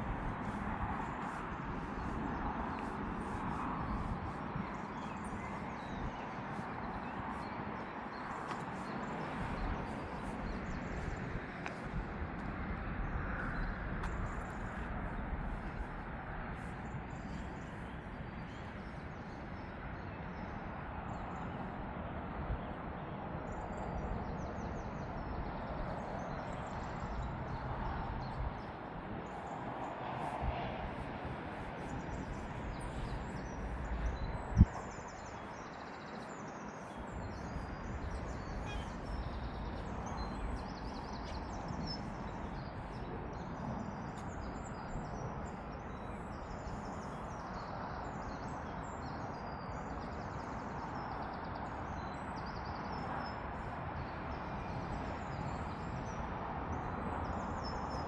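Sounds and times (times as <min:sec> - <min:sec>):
faint bird chirps: 0:38.3 - 0:40.6.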